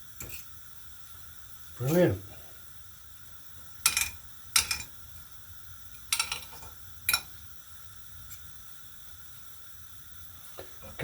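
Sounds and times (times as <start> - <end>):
utensil clinking against a dish: 3.8 - 5.0, 6.1 - 7.4.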